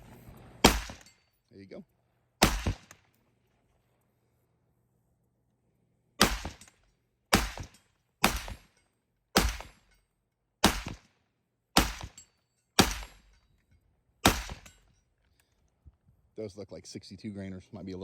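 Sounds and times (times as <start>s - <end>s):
rifle shots echoing: 0.6s - 1.2s, 2.4s - 3.1s, 6.2s - 8.7s, 9.4s - 9.9s, 10.6s - 11.1s, 11.8s - 12.2s, 12.8s - 13.3s, 14.2s - 14.8s.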